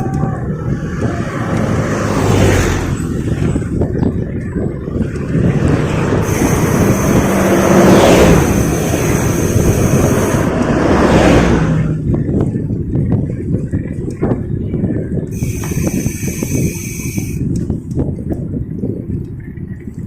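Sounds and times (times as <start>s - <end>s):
bicycle tyre rumble: 0.0s - 20.0s
wind on microphone: 0.0s - 20.0s
motor vehicle passing: 0.6s - 12.4s.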